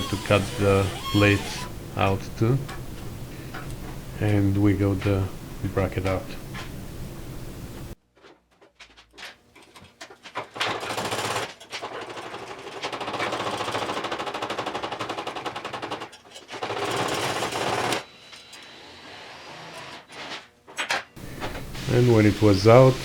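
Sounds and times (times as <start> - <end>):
power tool cutting steel: 0.0 - 2.2.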